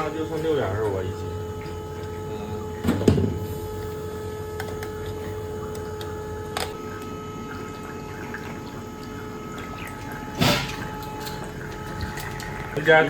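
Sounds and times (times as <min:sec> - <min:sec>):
steady machine hum: 0:00.0 - 0:13.0
water trickling: 0:06.8 - 0:13.0.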